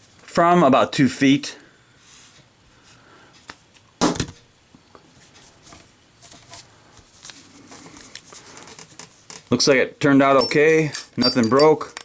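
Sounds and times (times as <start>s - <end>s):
faint clicks and handling noise: 3.4s - 9.8s.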